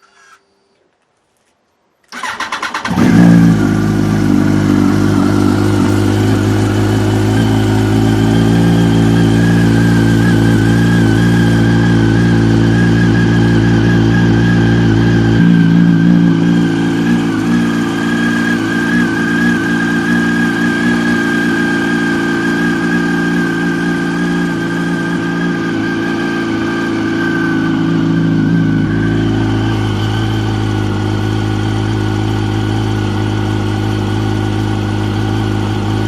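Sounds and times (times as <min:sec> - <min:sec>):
starter cranking engine: 0:02.1 - 0:04.2
motorcycle engine idling: 0:02.2 - 0:36.0.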